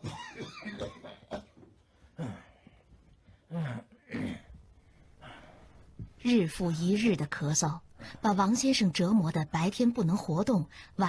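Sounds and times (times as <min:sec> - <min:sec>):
man coughing: 0:00.0 - 0:01.6.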